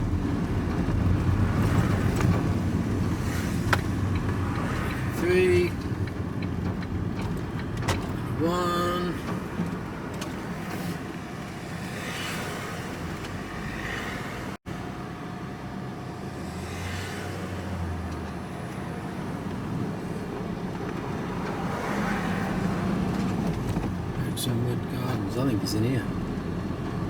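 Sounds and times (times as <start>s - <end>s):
road noise: 0.0s - 27.0s
vehicle engine hum: 0.0s - 27.0s.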